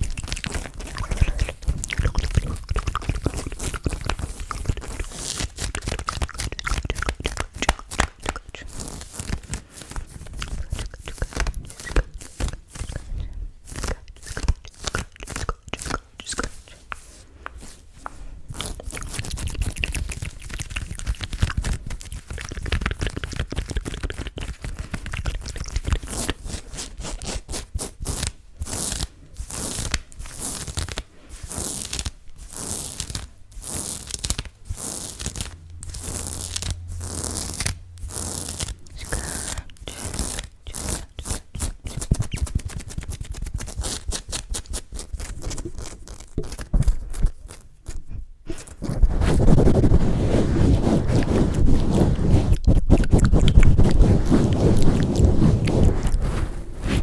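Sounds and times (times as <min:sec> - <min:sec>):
scratching on microphone: 0:00.0 - 0:57.0
low handling rumble: 0:35.5 - 0:39.0.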